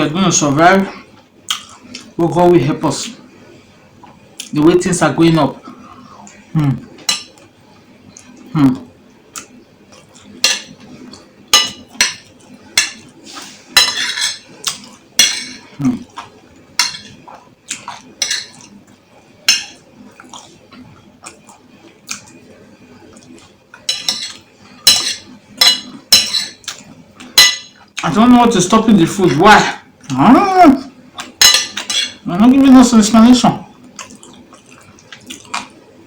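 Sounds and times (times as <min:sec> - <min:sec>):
mouth sounds of eating: 0:05.6 - 0:07.0, 0:08.1 - 0:10.4, 0:29.6 - 0:31.4
cutlery clinking against bowl: 0:10.2 - 0:10.9, 0:11.5 - 0:13.1, 0:13.8 - 0:18.7, 0:19.5 - 0:19.8, 0:23.8 - 0:27.8, 0:31.2 - 0:32.2.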